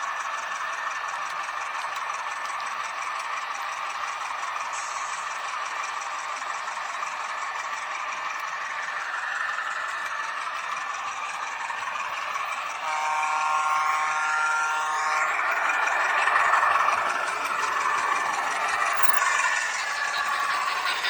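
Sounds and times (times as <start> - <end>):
model train running on track: 0.0 - 21.0
multi-note horn tone: 12.8 - 16.8.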